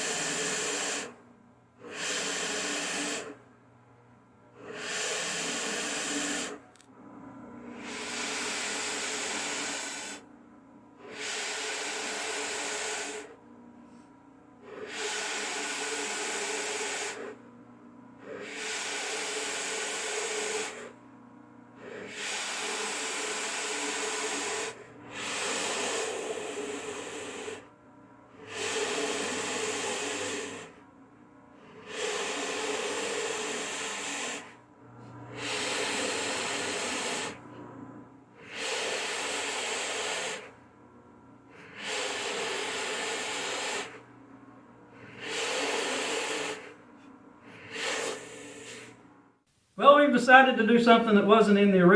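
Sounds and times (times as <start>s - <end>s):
drill bit boring into wood: 0.0s - 1.1s, 1.8s - 3.4s, 4.6s - 6.8s, 7.7s - 10.2s, 11.0s - 13.3s, 14.7s - 17.4s, 18.2s - 20.9s, 21.8s - 27.6s, 28.4s - 30.8s, 31.6s - 34.5s, 35.3s - 37.4s, 38.4s - 40.5s, 41.8s - 44.0s, 45.0s - 46.7s
drill press motor hum: 0.0s - 49.4s.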